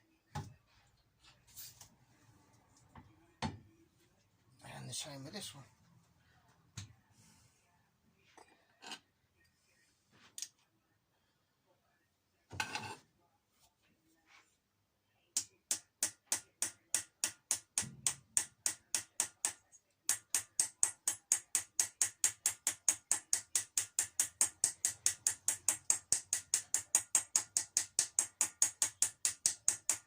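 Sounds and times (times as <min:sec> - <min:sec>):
hammer tapping on metal: 0:15.4 - 0:30.0.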